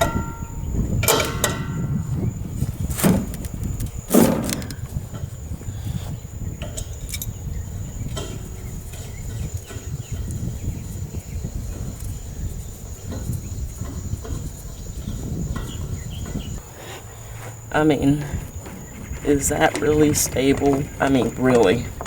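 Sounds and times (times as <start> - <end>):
wind rumble on microphone: 0.0 - 22.0
faint clicks and knocks: 18.3 - 22.0.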